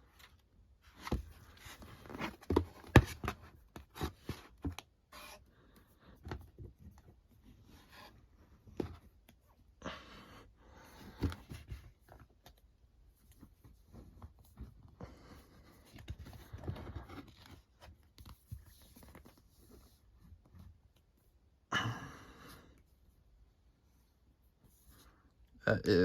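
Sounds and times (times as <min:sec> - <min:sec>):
books being handled: 0:00.1 - 0:09.5, 0:10.8 - 0:21.2
sliding cardboard rustles: 0:00.2 - 0:05.4.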